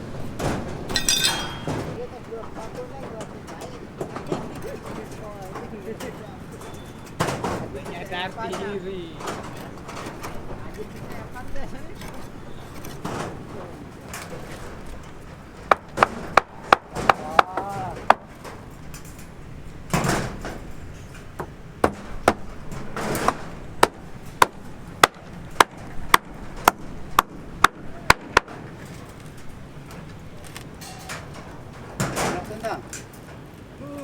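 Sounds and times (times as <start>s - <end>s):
hammer strikes: 0.9s - 2.0s.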